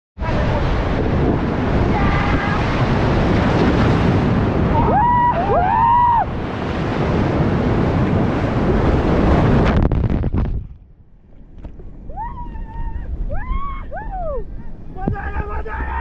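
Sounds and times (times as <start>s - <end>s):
wind buffeting microphone: 0.2s - 16.0s
person shouting: 1.9s - 2.8s, 15.0s - 16.0s.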